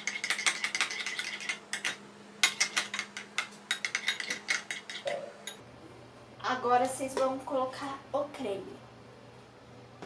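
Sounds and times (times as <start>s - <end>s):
spoon stirring in a container: 0.0s - 5.6s.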